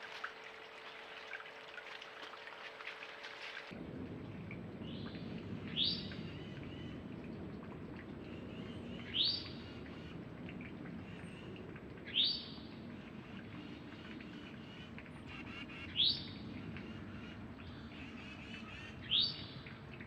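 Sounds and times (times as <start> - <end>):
mountain stream rushing: 0.0 - 0.2.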